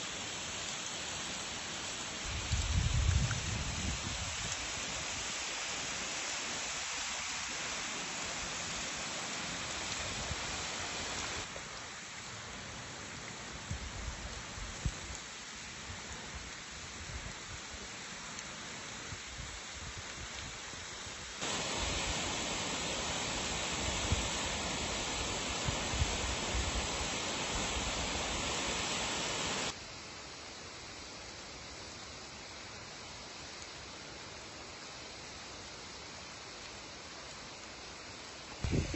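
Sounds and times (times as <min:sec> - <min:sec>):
waterfall rushing water: 0:04.6 - 0:12.5, 0:21.4 - 0:29.8.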